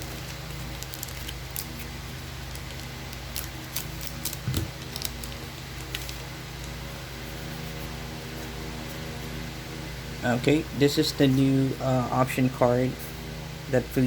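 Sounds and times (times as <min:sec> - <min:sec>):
air conditioner hum: 0:00.0 - 0:14.0
trading cards flipping and snapping: 0:00.2 - 0:06.8.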